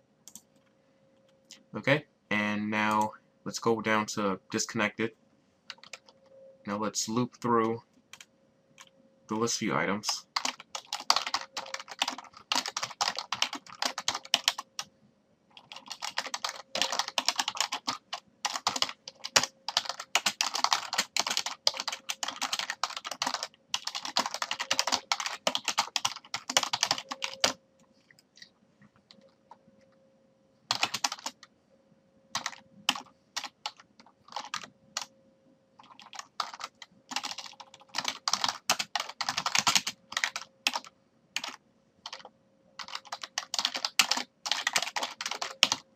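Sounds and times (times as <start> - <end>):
faint steady hum: 0.0 - 45.9
computer keyboard typing: 0.3 - 0.5, 5.7 - 6.2, 10.1 - 14.9, 15.5 - 29.5, 30.7 - 31.5, 32.3 - 35.1, 35.8 - 45.9.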